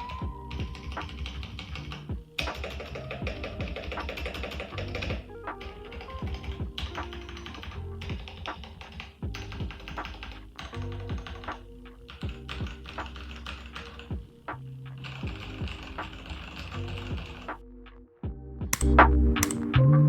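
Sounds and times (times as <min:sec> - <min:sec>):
mechanical keyboard typing: 0:00.0 - 0:14.3, 0:15.0 - 0:17.5, 0:18.8 - 0:19.6
music with bass beat: 0:00.2 - 0:02.4, 0:05.1 - 0:08.6, 0:09.2 - 0:13.1.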